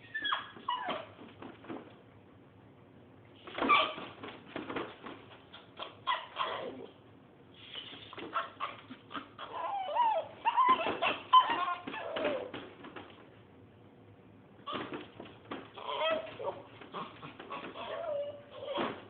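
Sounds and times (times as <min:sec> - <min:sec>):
dog whining and yelping: 0:00.0 - 0:01.3, 0:03.6 - 0:04.2, 0:05.5 - 0:07.0, 0:07.9 - 0:12.6, 0:14.7 - 0:15.0, 0:15.7 - 0:19.0.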